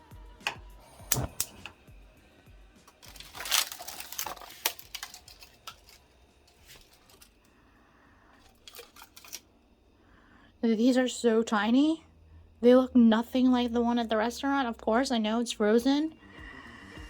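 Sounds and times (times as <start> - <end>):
utensils and cookware clattering: 0.4 - 1.8, 2.9 - 7.4, 8.4 - 9.4.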